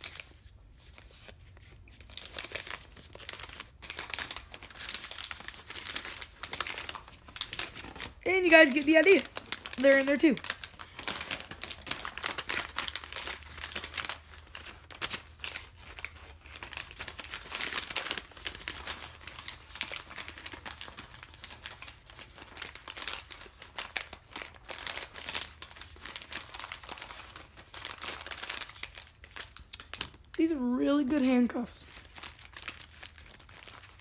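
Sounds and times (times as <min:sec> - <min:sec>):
packaging crinkling: 0:00.0 - 0:34.0.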